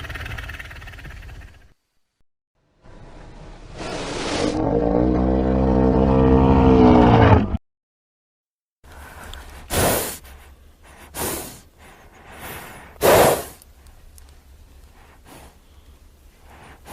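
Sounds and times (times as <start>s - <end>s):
low steady hum: 8.9s - 13.0s, 13.6s - 16.9s
heavy breathy exhalations: 8.9s - 13.7s, 14.9s - 16.9s.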